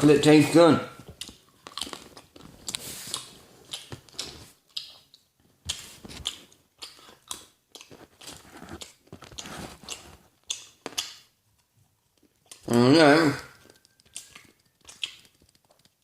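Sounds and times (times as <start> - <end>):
person chewing chocolate: 1.0 - 12.8, 13.4 - 16.0
mouth clicks: 13.4 - 16.0.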